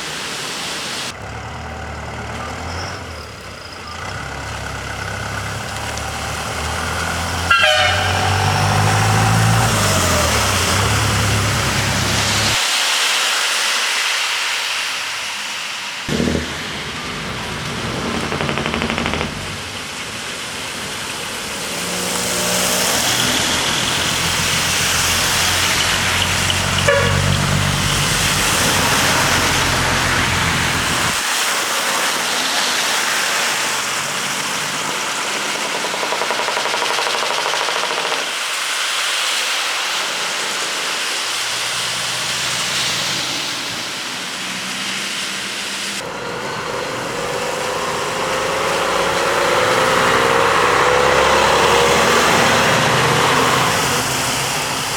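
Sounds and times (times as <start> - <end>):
truck diesel engines rumbling: 0.0 - 12.6, 15.6 - 38.6, 39.9 - 54.9
air horns: 7.5 - 10.9, 26.8 - 27.6.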